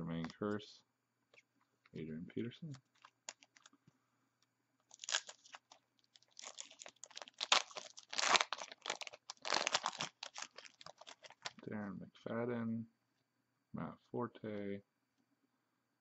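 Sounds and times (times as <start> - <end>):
card pack wrapper crinkling and tearing: 2.6 - 3.8, 4.9 - 11.6.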